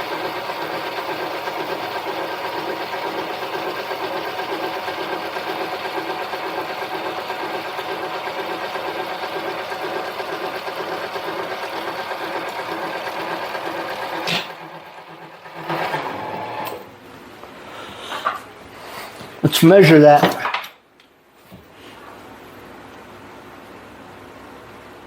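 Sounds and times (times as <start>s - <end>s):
lathe running with pulsing hum: 0.0s - 16.9s.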